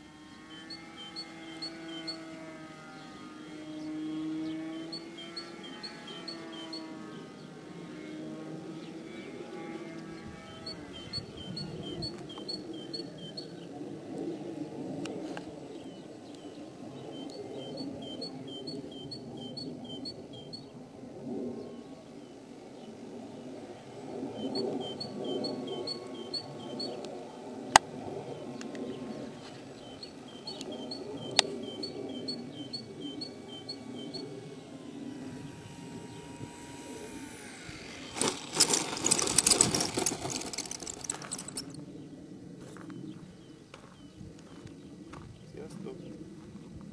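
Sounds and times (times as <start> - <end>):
bird chirping: 0.0 - 8.1, 8.7 - 14.0, 15.7 - 20.8, 23.7 - 27.3, 28.3 - 41.8
faint whine gliding down: 0.0 - 43.5
sharp clicks: 0.5 - 2.3, 4.6 - 6.9, 9.9 - 13.5, 24.4 - 27.2, 29.8 - 41.8.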